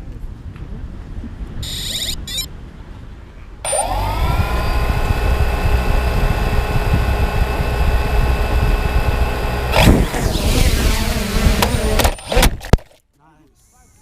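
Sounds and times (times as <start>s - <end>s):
drone motors whining: 3.6s - 12.8s
propeller wash buffeting microphone: 3.7s - 12.7s.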